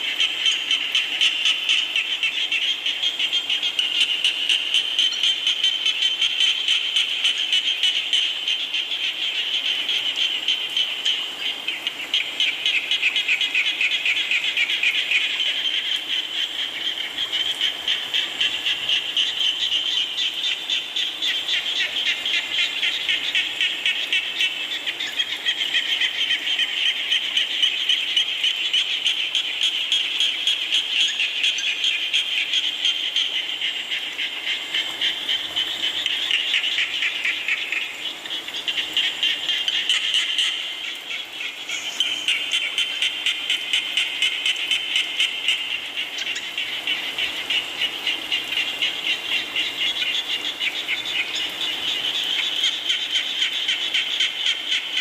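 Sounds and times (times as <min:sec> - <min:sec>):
frogs calling: 0:00.0 - 0:55.0
rain falling: 0:33.5 - 0:54.2.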